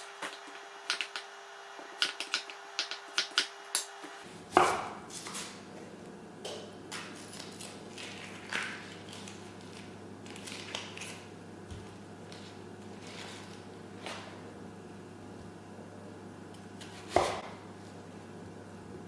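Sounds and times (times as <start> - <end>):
low steady hum: 4.0 - 19.0.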